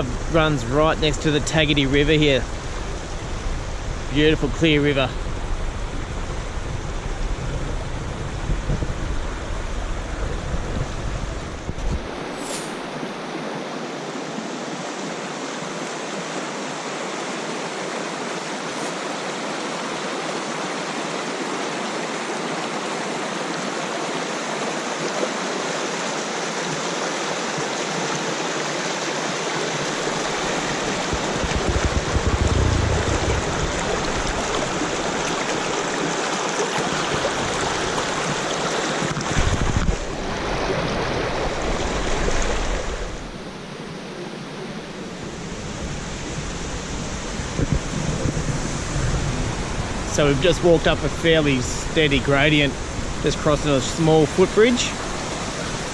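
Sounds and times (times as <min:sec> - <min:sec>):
river water rushing: 0:00.0 - 0:55.9
low rumble: 0:30.2 - 0:35.3.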